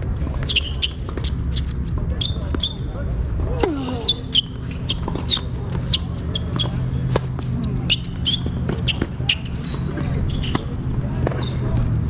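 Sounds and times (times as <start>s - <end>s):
rackets striking tennis ball: 3.6s - 11.8s.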